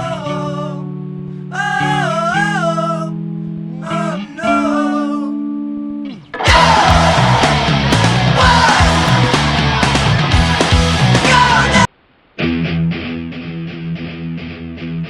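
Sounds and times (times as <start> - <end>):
wailing singing voice: 3.8 - 5.4, 6.1 - 11.9
electric guitar held notes: 6.3 - 11.8
distorted rock band: 6.3 - 15.0.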